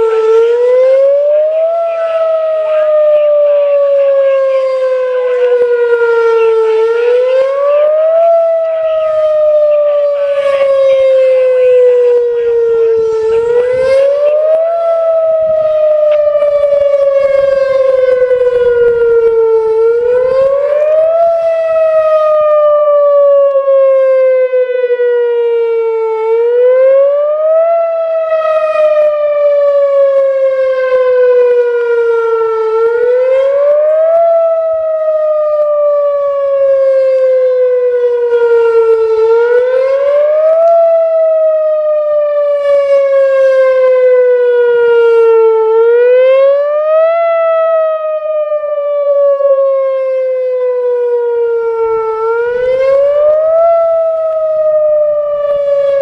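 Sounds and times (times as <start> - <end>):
tornado siren wailing: 0.0 - 56.0.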